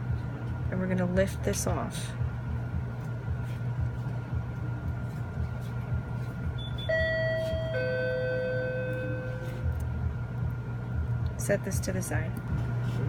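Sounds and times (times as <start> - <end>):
steady low hum: 0.0 - 13.0
two-note electronic chime: 6.6 - 9.6.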